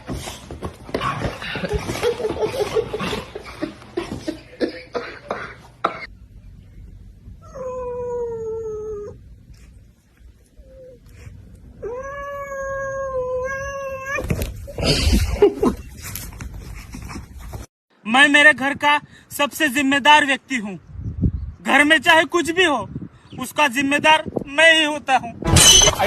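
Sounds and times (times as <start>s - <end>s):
cat yowling: 11.8s - 14.4s.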